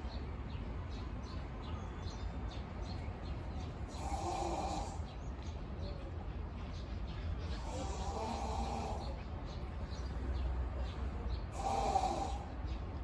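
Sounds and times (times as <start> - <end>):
hippopotamus snoring: 4.0 - 5.0, 7.6 - 9.2, 11.6 - 12.5.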